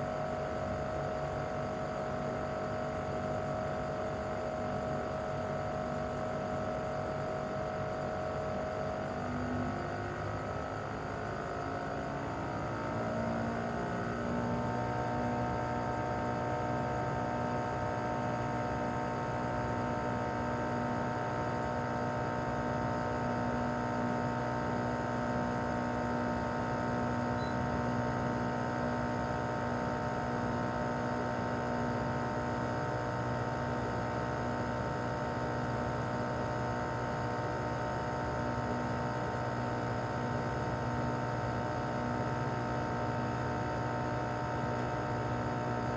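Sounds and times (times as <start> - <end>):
air conditioner unit humming: 15.1 - 45.9.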